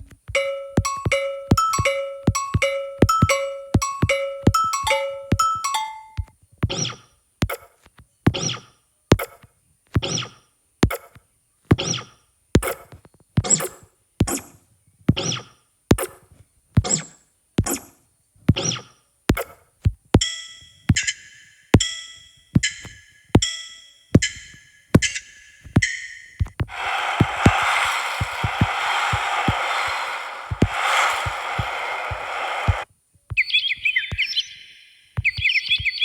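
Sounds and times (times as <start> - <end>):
drum machine beat: 0.4 - 6.2.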